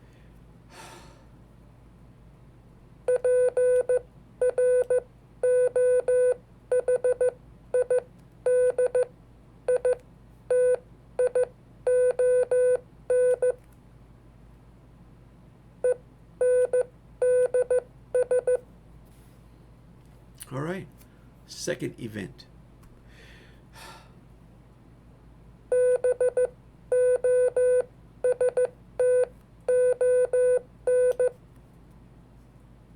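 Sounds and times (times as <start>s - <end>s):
morse code beeps: 3.1s - 9.1s, 9.7s - 13.6s, 16.4s - 18.6s, 25.7s - 31.3s.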